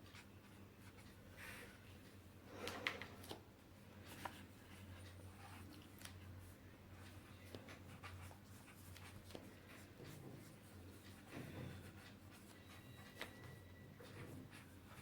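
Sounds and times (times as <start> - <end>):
paintbrush strokes on paper: 4.0 - 15.0.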